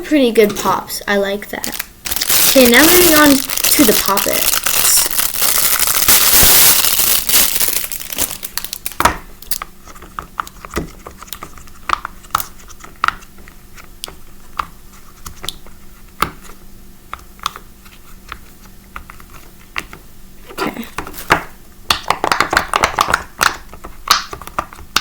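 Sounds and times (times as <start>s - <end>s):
plastic packaging crinkling: 1.5s - 9.6s
pop-it toy bubbles popping: 21.9s - 24.4s.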